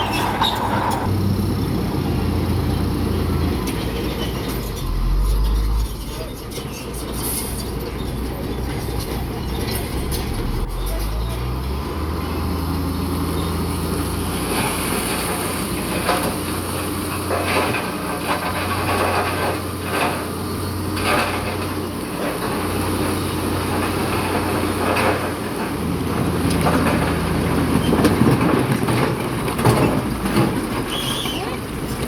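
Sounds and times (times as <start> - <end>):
crawler tracks clanking: 0.0 - 1.1, 3.5 - 32.0
bulldozer diesel engine: 0.0 - 32.0.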